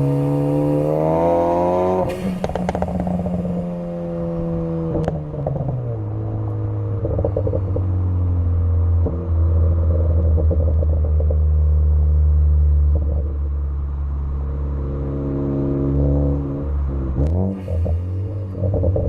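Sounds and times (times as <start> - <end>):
car engine running with crackles: 2.0 - 3.6, 4.2 - 14.8, 16.1 - 19.0.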